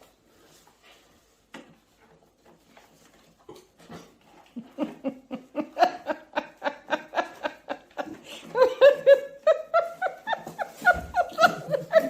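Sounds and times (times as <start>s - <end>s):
person laughing: 4.6s - 12.0s.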